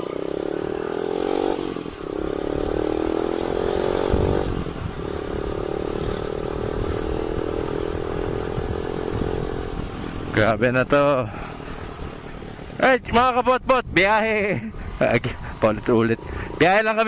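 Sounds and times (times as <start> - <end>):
motorcycle engine accelerating: 0.0 - 10.6.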